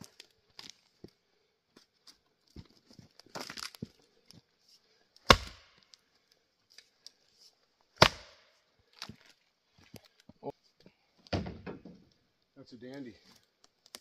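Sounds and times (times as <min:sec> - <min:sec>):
axe chopping wood: 0:05.2 - 0:05.9, 0:08.0 - 0:08.5
wood knocking: 0:11.3 - 0:12.0.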